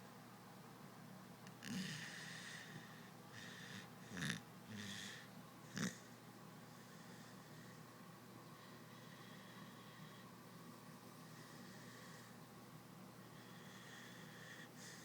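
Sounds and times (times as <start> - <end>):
dog snorting: 1.6 - 2.8, 3.4 - 6.1
dog snoring: 1.6 - 6.2, 13.3 - 15.0.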